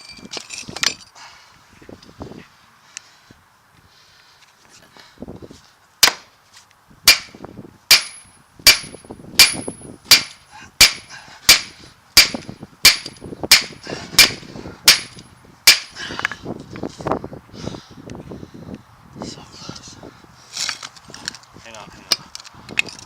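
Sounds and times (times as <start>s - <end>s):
hammer striking steel: 7.1s - 16.0s.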